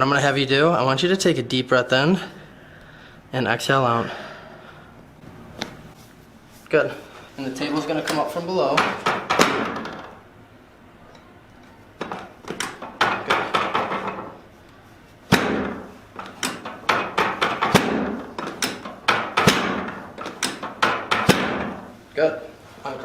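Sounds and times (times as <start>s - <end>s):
adjusting table knocks and clacks: 8.0s - 10.2s, 12.0s - 14.4s, 15.3s - 21.9s.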